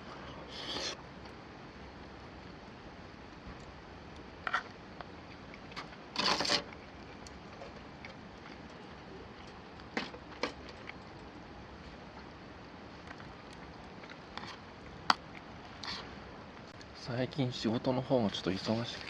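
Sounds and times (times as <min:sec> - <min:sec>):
steady low hiss: 0:00.0 - 0:19.0
scraping rustle: 0:05.8 - 0:06.8.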